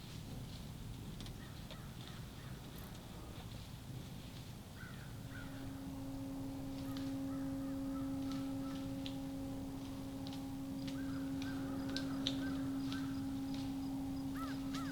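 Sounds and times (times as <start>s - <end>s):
steady low hum: 3.2s - 14.9s
bird calls: 4.9s - 14.9s.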